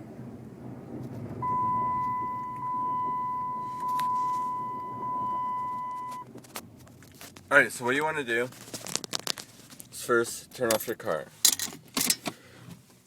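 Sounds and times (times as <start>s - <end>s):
seatbelt reminder chime: 1.4s - 6.2s.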